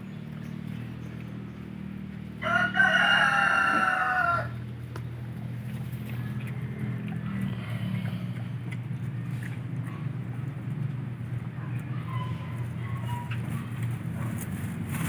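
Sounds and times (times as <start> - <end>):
rooster crowing: 2.4 - 4.6
steady low hum: 3.4 - 15.0.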